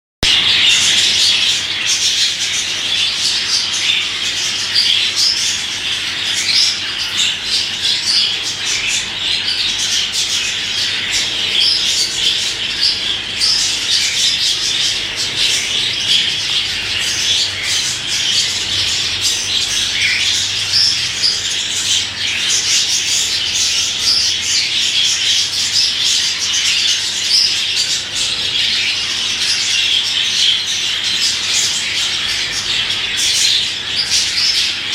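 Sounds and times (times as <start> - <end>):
budgerigar chattering and squawking: 0.2 - 34.9.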